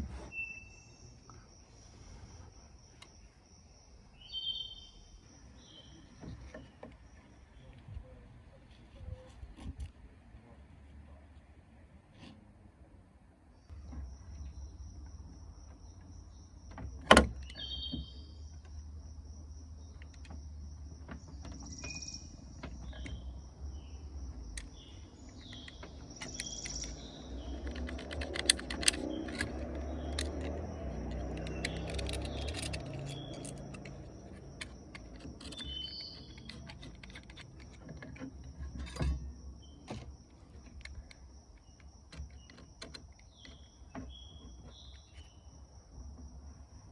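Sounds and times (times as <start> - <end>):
bird chirps: 0.3 - 1.5, 4.0 - 8.2, 17.4 - 19.0, 21.1 - 27.8, 35.4 - 36.9, 41.6 - 45.6.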